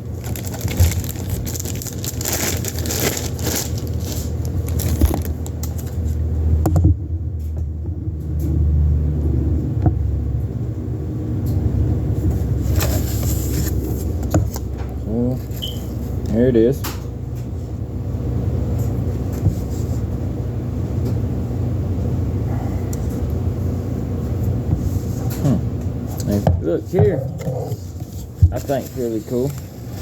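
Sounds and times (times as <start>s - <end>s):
packaging crinkling and rustling: 0.0s - 6.2s, 15.3s - 16.1s
steady low rumble: 0.0s - 30.0s.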